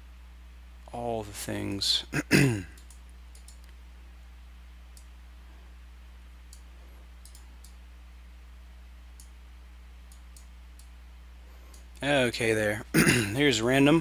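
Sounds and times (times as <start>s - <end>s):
low electrical hum: 0.0s - 14.0s
computer mouse clicks: 2.8s - 3.8s, 6.5s - 7.8s, 10.1s - 10.9s.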